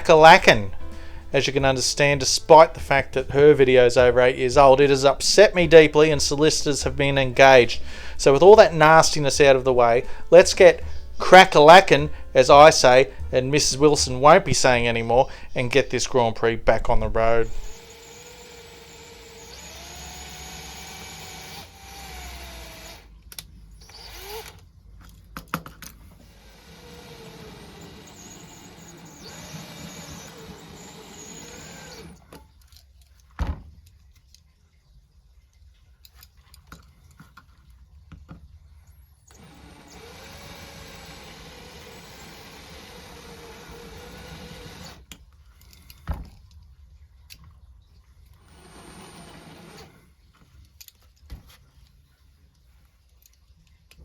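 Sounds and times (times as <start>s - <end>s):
electric power tool motor: 17.4s - 23.1s, 23.8s - 24.6s, 26.2s - 32.2s, 39.3s - 45.0s, 48.4s - 50.0s.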